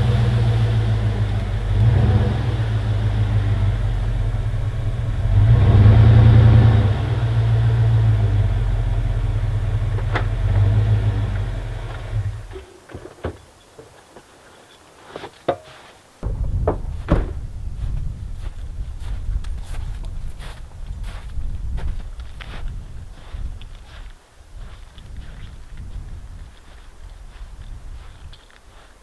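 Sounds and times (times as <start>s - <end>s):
car engine running: 0.0s - 12.5s
low rumbling noise: 0.0s - 12.6s, 16.2s - 24.0s
knocks and clicks: 16.2s - 17.5s.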